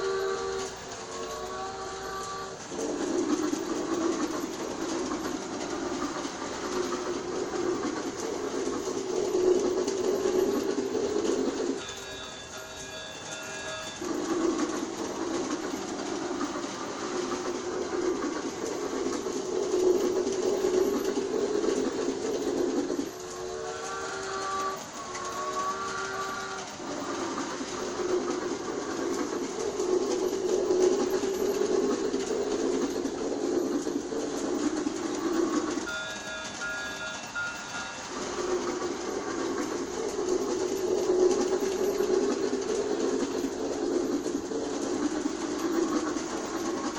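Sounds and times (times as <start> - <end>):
steam whistle: 0.0 - 2.6, 23.2 - 26.7
toy steam train chuffing: 0.0 - 46.9.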